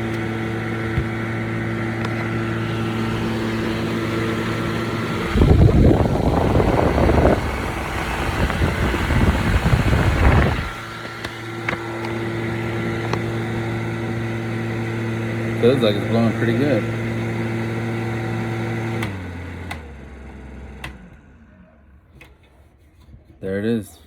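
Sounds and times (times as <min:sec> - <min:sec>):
air buffeting microphone: 0:00.0 - 0:14.3
fan motor hum with airflow: 0:00.0 - 0:22.5.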